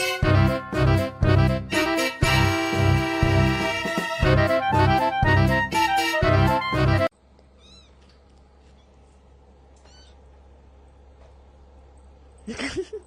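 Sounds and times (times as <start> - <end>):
background music: 0.0 - 7.1
cat meowing: 7.6 - 8.0, 9.8 - 10.2.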